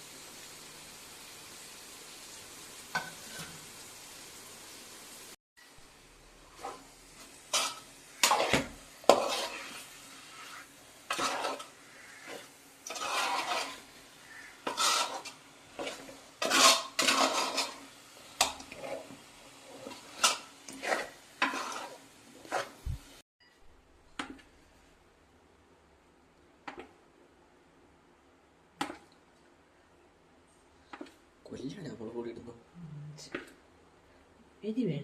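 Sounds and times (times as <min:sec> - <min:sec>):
spoon stirring in a pan: 0:02.9 - 0:03.7, 0:06.4 - 0:22.8.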